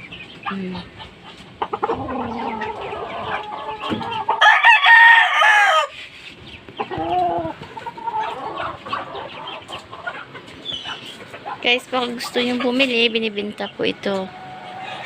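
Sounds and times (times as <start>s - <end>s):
fowl clucking: 0.0s - 13.0s, 14.1s - 15.0s
rooster crowing: 4.3s - 5.9s.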